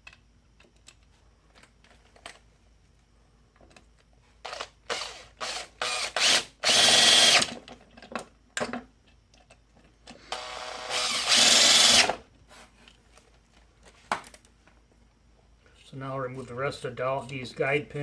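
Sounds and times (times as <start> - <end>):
power driver whirring: 4.5 - 7.5, 10.3 - 12.2.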